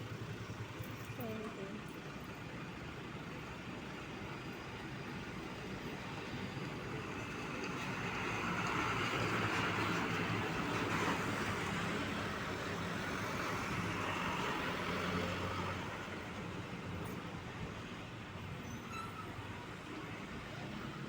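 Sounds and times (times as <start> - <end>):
truck passing on road: 2.6 - 18.6.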